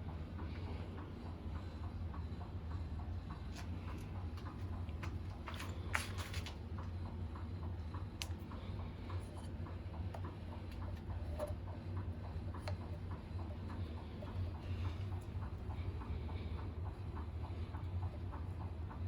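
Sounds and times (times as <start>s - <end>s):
light regular ticking: 6.6s - 19.0s.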